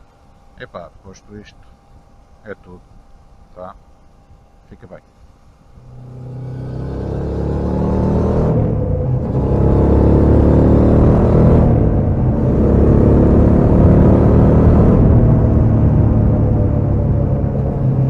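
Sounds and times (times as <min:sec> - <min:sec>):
motorcycle engine accelerating: 0:05.8 - 0:18.0.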